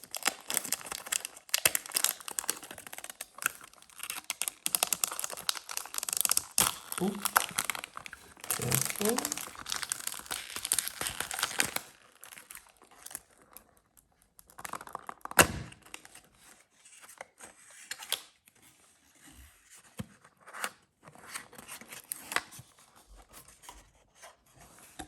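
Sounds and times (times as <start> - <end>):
foil tearing and crinkling: 0.0 - 13.2.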